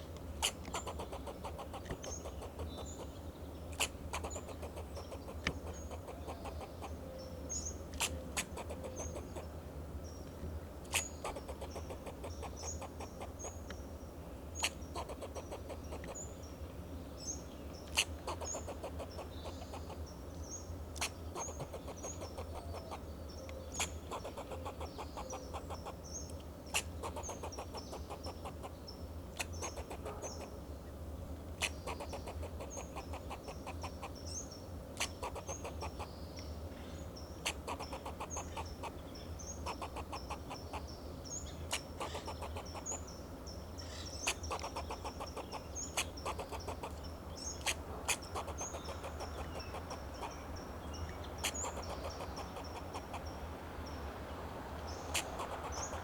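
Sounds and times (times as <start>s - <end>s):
squirrel clucking alarm barks: 0.4s - 7.0s, 8.0s - 9.5s, 10.9s - 13.6s, 14.6s - 16.2s, 17.9s - 20.0s, 21.0s - 23.1s, 23.8s - 26.0s, 26.7s - 28.8s, 29.4s - 30.6s, 31.6s - 34.2s, 35.0s - 36.2s, 37.4s - 40.9s, 41.5s - 43.2s, 44.2s - 53.4s, 55.0s - 56.0s.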